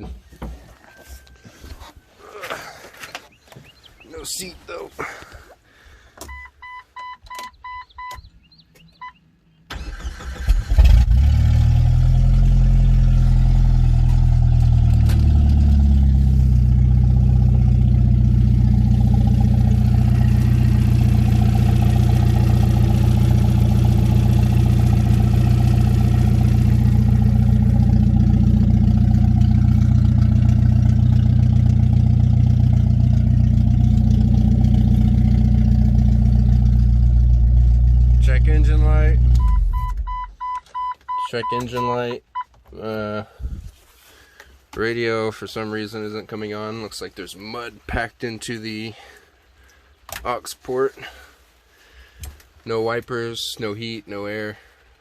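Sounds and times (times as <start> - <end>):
dashboard warning chime: 6.3 - 8.2, 39.4 - 42.5
car engine idling: 9.7 - 40.2.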